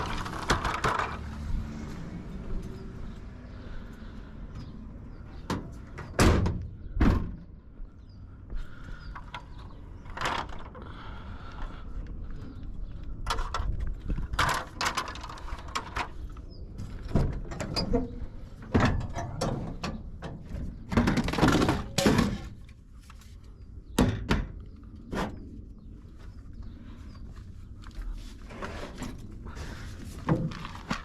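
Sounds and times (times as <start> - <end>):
scraping rattle: 0.0 - 1.4
knocks and clunks of handling: 13.2 - 23.3, 28.5 - 31.0.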